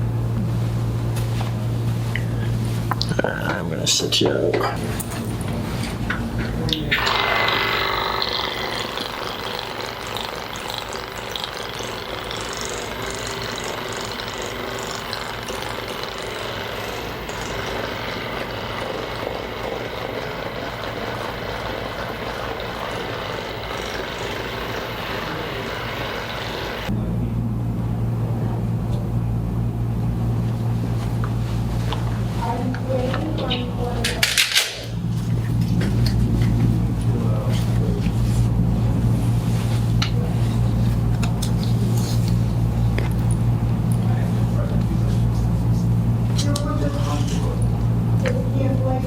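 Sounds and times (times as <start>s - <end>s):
small motor buzzing: 6.8s - 26.9s.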